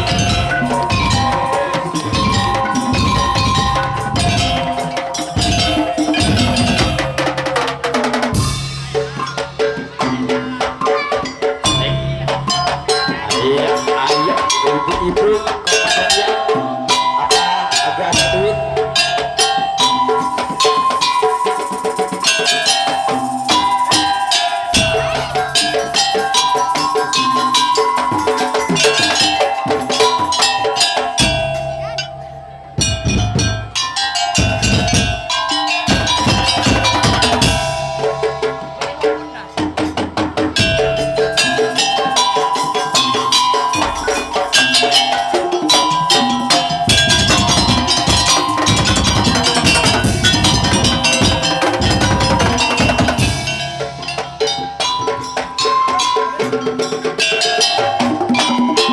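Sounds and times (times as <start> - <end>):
held melody: 0.0 - 58.9
percussion ensemble playing: 0.0 - 58.9
wooden slit drums and drums: 0.0 - 58.9
heavy low drum hits: 32.8 - 41.5.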